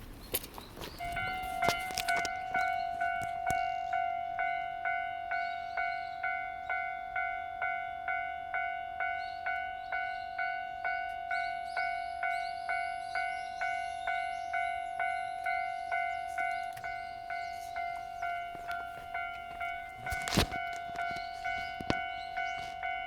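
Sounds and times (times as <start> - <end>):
level crossing alarm bell ringing: 1.0 - 23.0.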